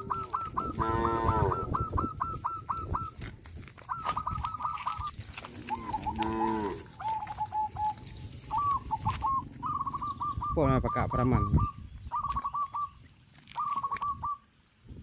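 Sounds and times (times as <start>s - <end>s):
high bird chirps: 0.0s - 3.2s, 3.9s - 14.5s
cow mooing: 0.7s - 1.7s, 5.4s - 7.0s.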